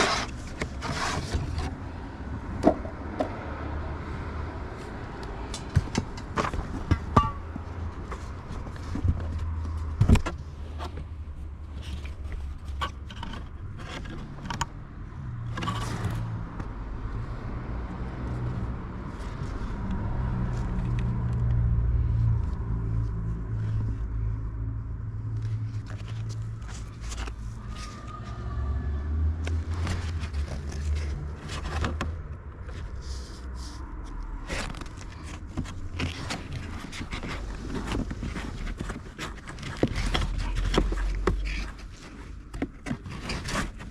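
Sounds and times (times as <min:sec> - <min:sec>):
parts scraping and clicking: 0:00.0 - 0:03.3, 0:11.7 - 0:14.8, 0:15.4 - 0:16.7, 0:29.4 - 0:43.9.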